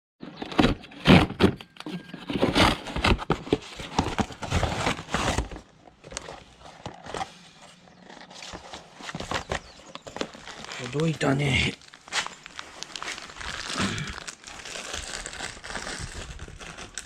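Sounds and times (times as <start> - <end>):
things being handled: 0.2 - 17.0.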